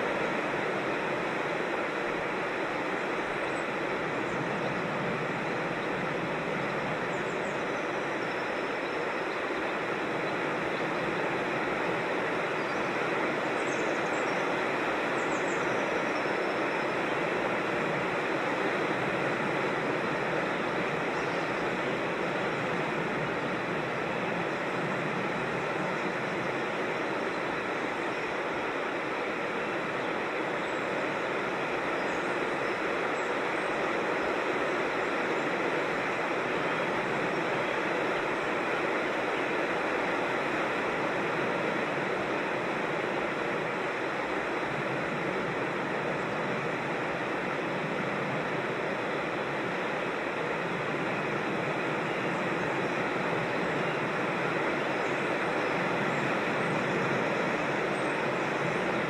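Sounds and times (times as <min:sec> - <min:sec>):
creek water rushing: 0:00.0 - 0:59.0.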